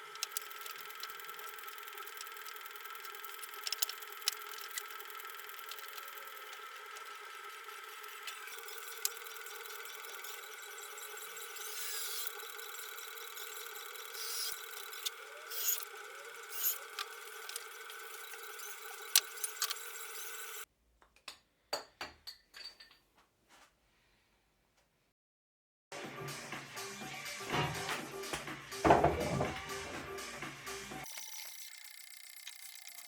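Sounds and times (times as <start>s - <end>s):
electric power tool working wood: 0.0s - 20.6s.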